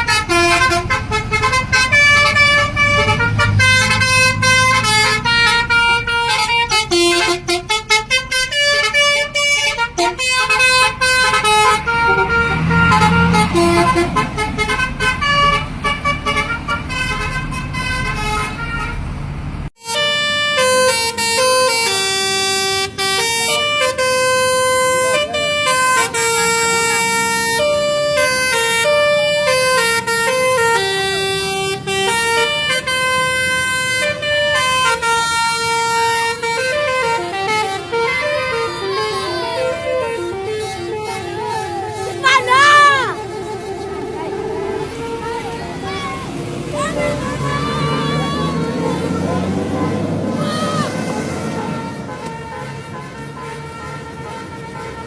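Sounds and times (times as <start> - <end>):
bus horn playing a melody: 0.0 - 19.1, 19.7 - 55.0
low engine rumble: 21.2 - 55.0.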